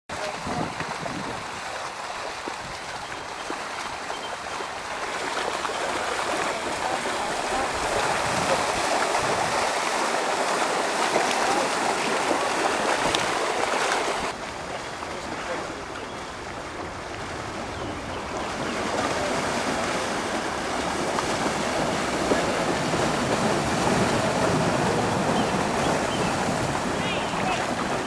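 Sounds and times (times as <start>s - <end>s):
floodwater rushing: 0.1s - 28.0s.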